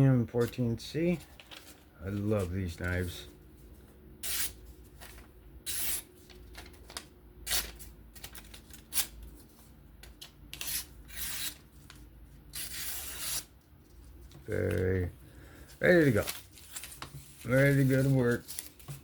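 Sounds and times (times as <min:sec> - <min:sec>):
knife slicing paper: 0:12.6 - 0:13.5.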